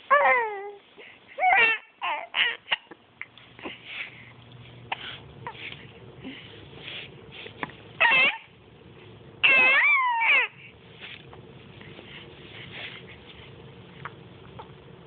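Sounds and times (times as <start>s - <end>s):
baby cooing: 0.1s - 0.8s, 1.4s - 3.0s, 8.0s - 8.5s, 9.4s - 10.7s.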